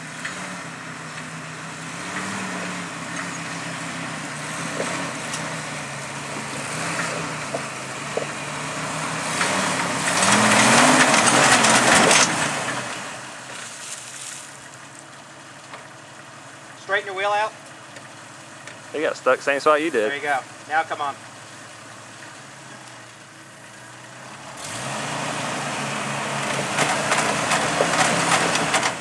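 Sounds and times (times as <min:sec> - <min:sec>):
off-road car engine: 0:00.0 - 0:29.0
tyres scrabbling on rock: 0:26.6 - 0:29.0.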